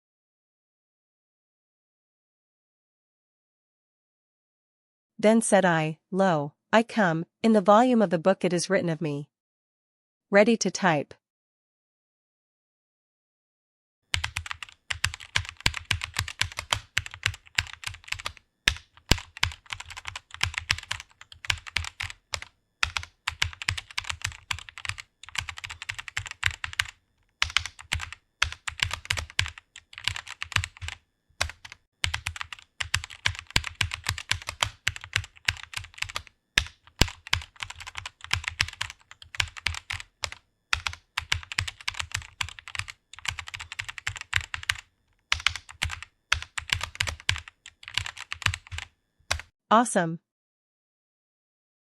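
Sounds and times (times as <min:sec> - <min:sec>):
fast typing on keyboard: 0:14.1 - 0:49.5.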